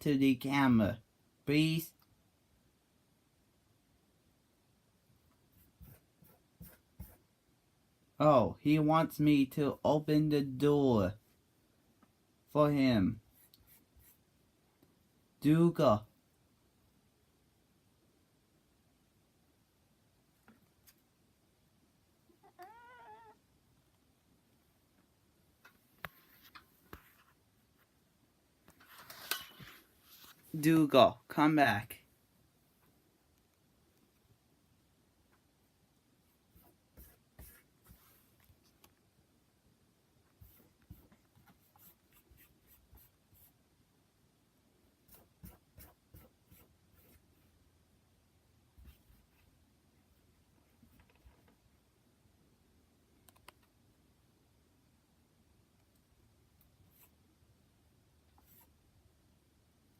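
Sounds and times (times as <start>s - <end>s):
cat meowing: 22.3s - 23.4s.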